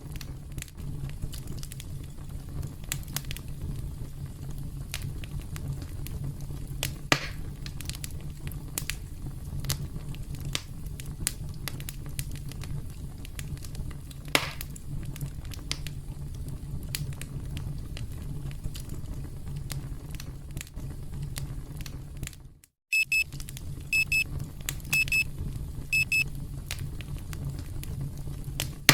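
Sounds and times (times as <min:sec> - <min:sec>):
campfire crackling and popping: 0:00.0 - 0:28.9
timer alarm beeping: 0:22.9 - 0:23.2, 0:24.0 - 0:24.2, 0:24.9 - 0:25.2, 0:26.0 - 0:26.2.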